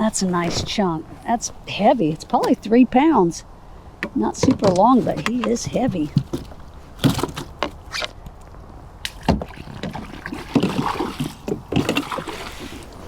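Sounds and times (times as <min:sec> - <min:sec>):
knocks and bumps on kayak: 0:04.0 - 0:07.8
water sloshing and dripping: 0:09.0 - 0:13.0.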